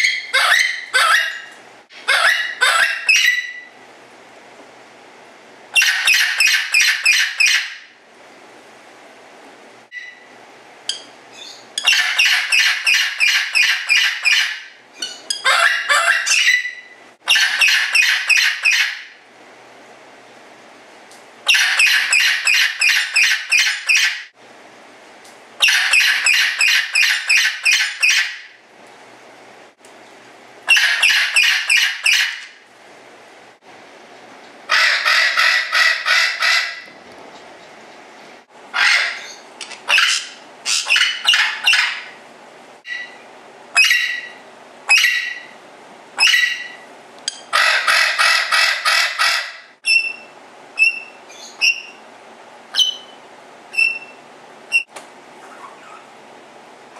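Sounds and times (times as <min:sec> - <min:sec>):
bird calling harsh notes: 0:00.0 - 0:01.5, 0:34.7 - 0:36.9.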